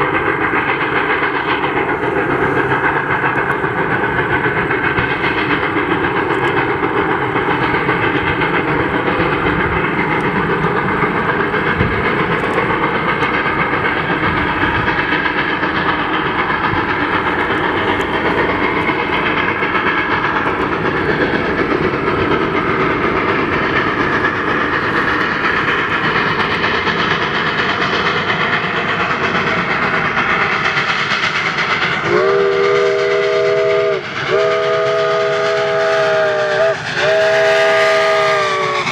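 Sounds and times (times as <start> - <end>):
steam locomotive running by: 0.0 - 38.9
steam whistle: 32.0 - 38.9.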